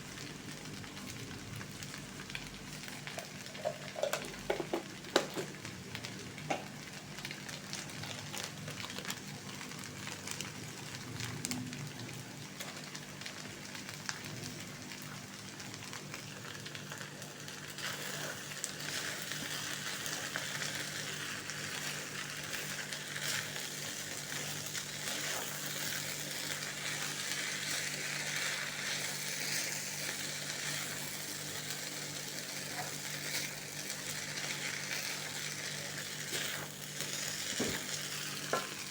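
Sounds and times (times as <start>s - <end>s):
food sizzling in hot pan: 0.0s - 38.9s.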